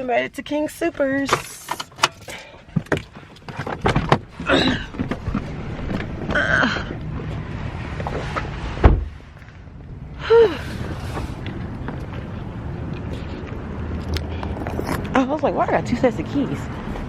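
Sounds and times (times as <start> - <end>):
clicks and rustling: 1.0 - 6.4
car door shutting: 8.0 - 9.2.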